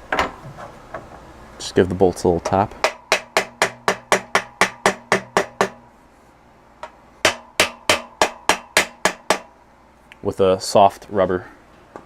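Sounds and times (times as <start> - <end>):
rubber mallet tapping bolts: 2.5 - 5.9, 6.8 - 9.5.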